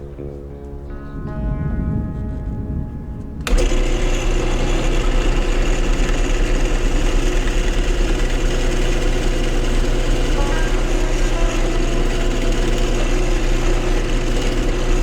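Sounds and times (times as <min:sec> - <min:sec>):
woodworking power tool whirring: 0:03.4 - 0:15.0.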